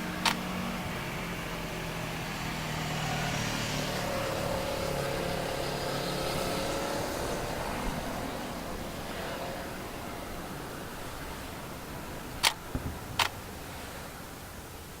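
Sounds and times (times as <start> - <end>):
passing engine tone: 0.0 - 10.3
motor vehicles humming: 0.0 - 15.0
sharp crack: 12.4 - 13.4.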